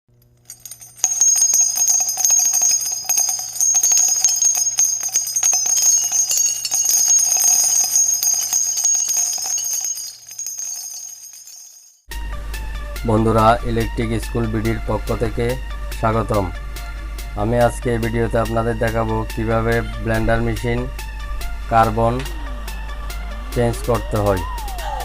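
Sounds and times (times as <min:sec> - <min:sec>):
jingling bells: 0:00.4 - 0:12.0.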